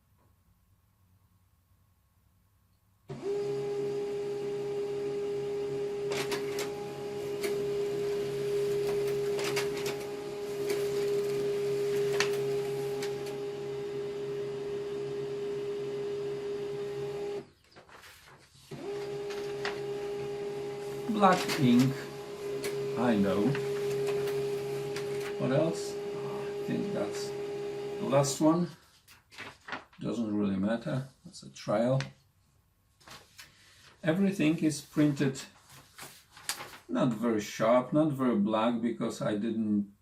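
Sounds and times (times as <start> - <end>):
laser printer whirring hum: 3.1 - 17.4, 18.7 - 28.1
printer sharp clicks: 6.0 - 13.5, 23.6 - 25.4.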